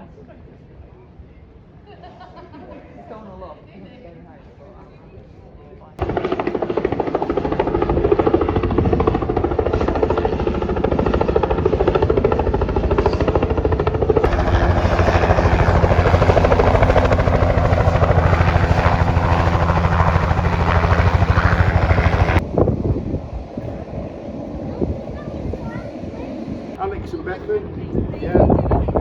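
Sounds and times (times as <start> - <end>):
helicopter engine hum: 6.0 - 22.4
helicopter rotor chop: 6.0 - 22.4.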